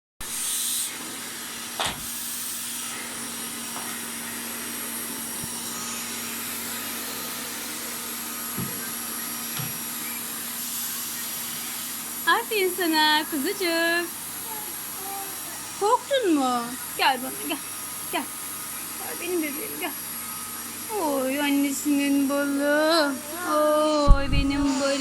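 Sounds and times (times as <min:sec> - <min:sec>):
knocks on vacuum: 0:01.8 - 0:02.1, 0:08.5 - 0:08.8, 0:09.5 - 0:09.8, 0:24.1 - 0:24.6
stick vacuum humming: 0:02.8 - 0:25.0.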